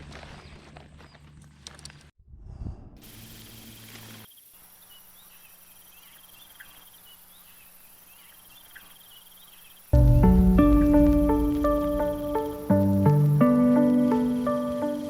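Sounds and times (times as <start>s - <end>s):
crickets trilling: 3.0s - 15.0s.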